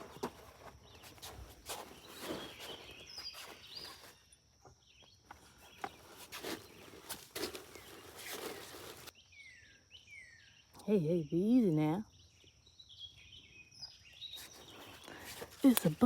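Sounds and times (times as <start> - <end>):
rustling plants: 0.0 - 4.4, 5.2 - 9.1, 14.3 - 16.0
footsteps among plants: 0.0 - 9.1, 14.3 - 16.0
birds chirping: 0.0 - 16.0.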